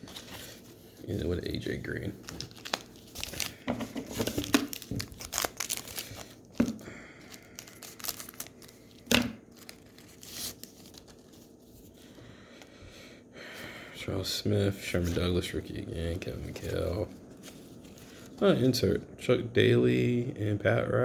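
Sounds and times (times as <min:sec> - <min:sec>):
rustling of wrapper and cards: 0:00.0 - 0:12.7, 0:16.1 - 0:18.8
wrapper tearing and crinkling: 0:01.5 - 0:11.6
wrapper snap: 0:02.2 - 0:11.1.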